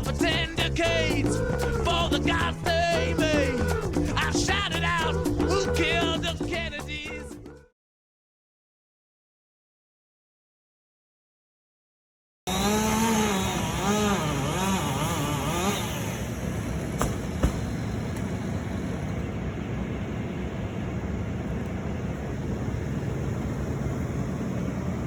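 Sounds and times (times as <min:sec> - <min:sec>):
engine revving: 0:00.0 - 0:06.7, 0:12.5 - 0:18.2
sharp knocks: 0:17.0 - 0:17.9.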